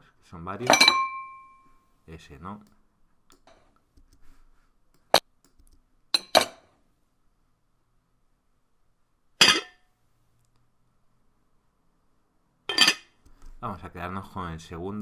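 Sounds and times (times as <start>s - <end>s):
plate clinking on a table: 0.6s - 1.5s, 9.4s - 9.8s, 12.7s - 13.2s.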